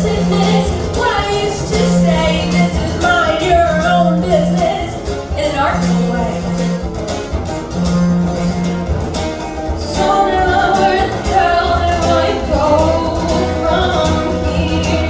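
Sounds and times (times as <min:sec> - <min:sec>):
person singing: 0:00.0 - 0:06.7, 0:09.9 - 0:15.0
live band playing: 0:00.0 - 0:15.0.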